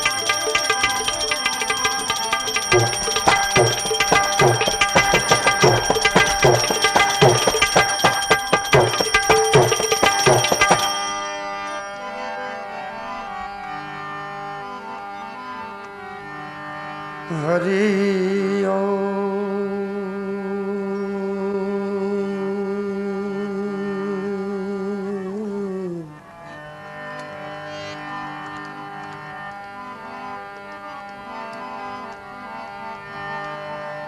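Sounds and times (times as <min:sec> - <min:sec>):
sustained instrumental drone: 0:00.0 - 0:13.0
man singing long note with vibrato: 0:17.3 - 0:26.3.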